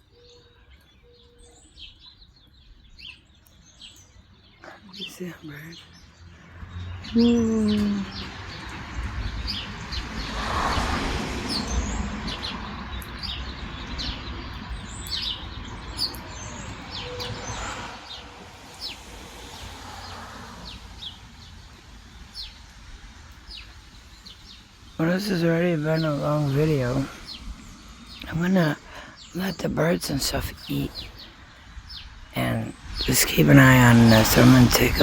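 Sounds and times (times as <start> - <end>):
small birds chirping: 0.0 - 35.0
wind rushing: 6.7 - 29.5, 30.2 - 35.0.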